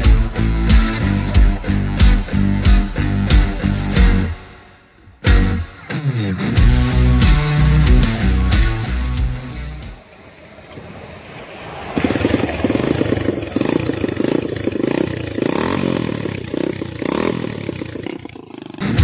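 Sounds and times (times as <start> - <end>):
motorcycle engine revving: 6.6 - 19.0.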